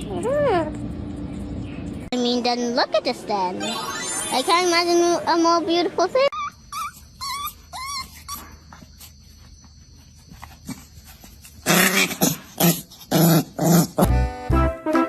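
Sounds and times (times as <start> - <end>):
dog whining: 6.3 - 9.0
dog growling: 11.6 - 14.2.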